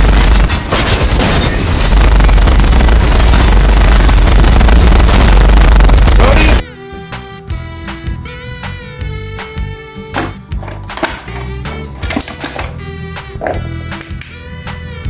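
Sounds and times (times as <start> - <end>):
explosions: 0.0 - 6.6
gunfire: 0.0 - 6.6.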